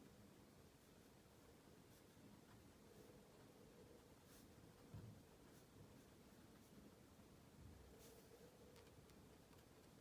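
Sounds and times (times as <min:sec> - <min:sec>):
pencil strokes on paper: 0:00.6 - 0:07.2, 0:07.8 - 0:08.6.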